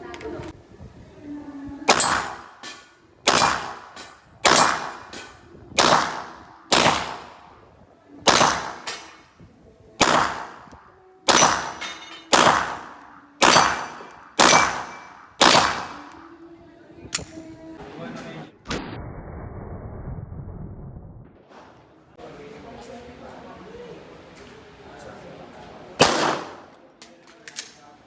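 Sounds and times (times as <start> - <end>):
pistol gunshots: 1.9 - 7.5, 8.2 - 9.3, 10.0 - 16.2, 26.0 - 26.8.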